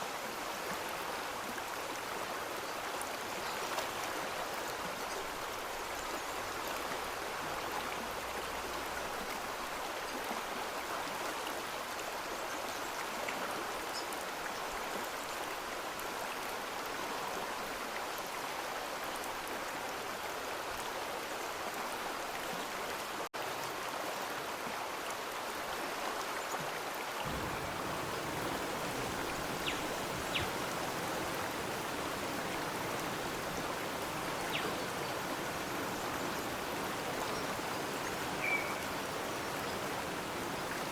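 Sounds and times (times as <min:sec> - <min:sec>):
stream flowing: 0:00.0 - 0:19.2, 0:27.2 - 0:40.9.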